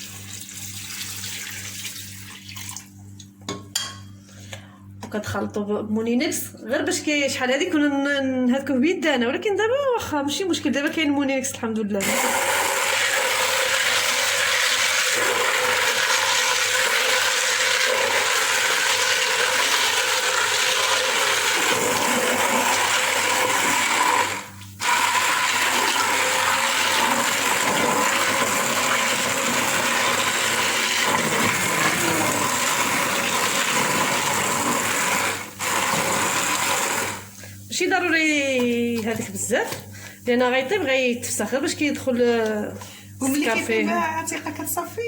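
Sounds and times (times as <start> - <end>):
electric blender running: 12.0 - 37.5.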